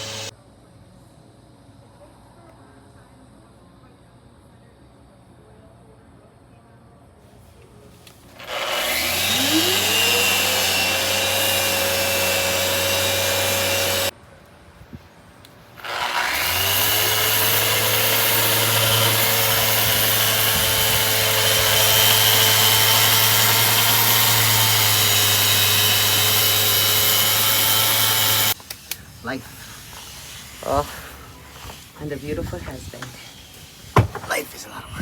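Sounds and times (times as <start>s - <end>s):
electric sander: 0.0s - 0.3s, 8.4s - 14.1s, 15.8s - 28.6s.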